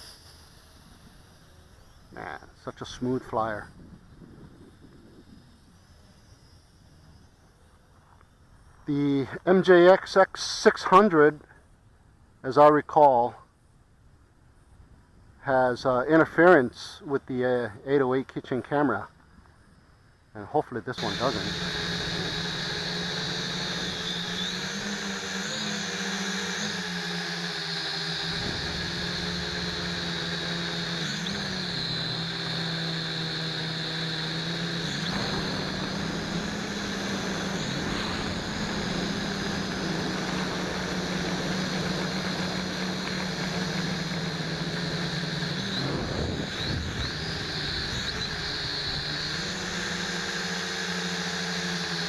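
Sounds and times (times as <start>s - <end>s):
drone motors whining: 0.0s - 9.9s, 20.9s - 52.0s.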